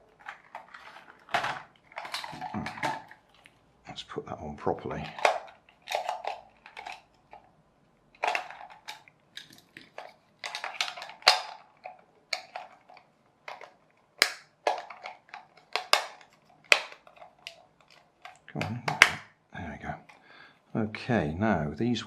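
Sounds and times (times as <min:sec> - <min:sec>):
plastic clicks and knocks: 0:08.2 - 0:19.3.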